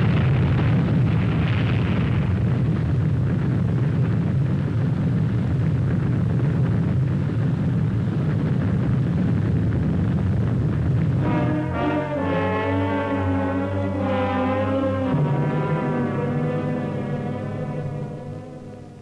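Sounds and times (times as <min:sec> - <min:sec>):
loud low rumble: 0:10.6 - 0:19.0.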